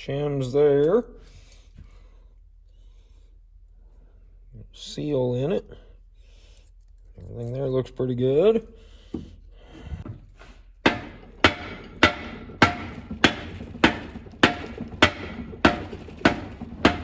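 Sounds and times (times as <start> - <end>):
hammer blows on steel: 10.9 - 17.0.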